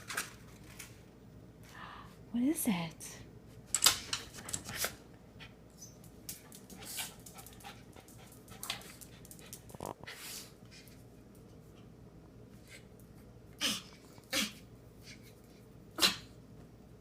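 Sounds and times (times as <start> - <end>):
dog sneezing: 13.6 - 14.7, 15.9 - 16.4.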